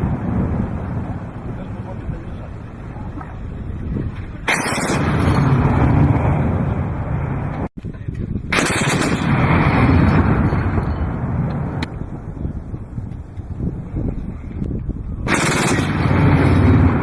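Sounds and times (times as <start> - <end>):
autocannon firing bursts: 4.4 - 6.0, 8.5 - 10.8, 15.3 - 17.0.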